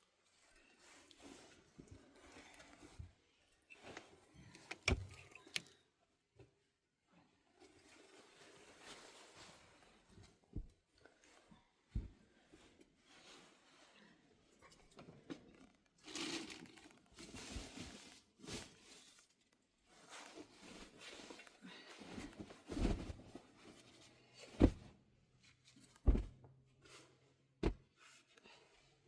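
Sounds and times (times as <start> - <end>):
rustling and scraping handling: 16.1 - 28.4
heavy thuds: 24.6 - 24.9, 26.0 - 26.4.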